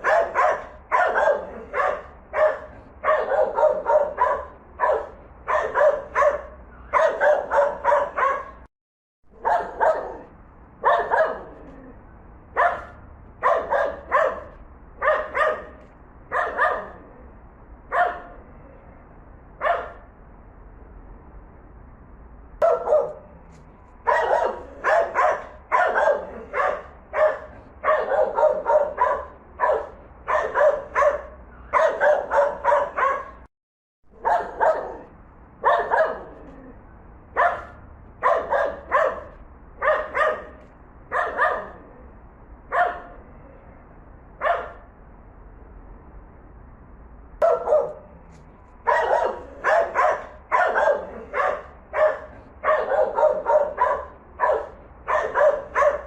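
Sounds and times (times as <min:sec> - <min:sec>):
dog barking in rapid runs: 0:00.0 - 0:08.7, 0:09.4 - 0:11.6, 0:12.6 - 0:17.0, 0:17.9 - 0:18.4, 0:19.6 - 0:20.0, 0:22.6 - 0:23.3, 0:24.0 - 0:33.5, 0:34.2 - 0:36.4, 0:37.4 - 0:41.8, 0:42.7 - 0:43.2, 0:44.4 - 0:44.8, 0:47.4 - 0:48.0, 0:48.8 - 0:56.0
large dog barking slowly: 0:00.0 - 0:08.7, 0:09.3 - 0:11.8, 0:12.5 - 0:17.2, 0:22.6 - 0:23.4, 0:24.0 - 0:33.5, 0:34.2 - 0:36.6, 0:37.4 - 0:42.0, 0:47.4 - 0:48.1, 0:48.8 - 0:56.0
small dog barking in quick clusters: 0:00.0 - 0:08.7, 0:09.4 - 0:11.5, 0:12.6 - 0:17.0, 0:17.9 - 0:18.4, 0:19.6 - 0:20.0, 0:22.6 - 0:23.3, 0:24.0 - 0:33.5, 0:34.2 - 0:36.4, 0:37.4 - 0:41.8, 0:42.7 - 0:43.2, 0:44.4 - 0:44.8, 0:47.4 - 0:48.0, 0:48.8 - 0:56.0.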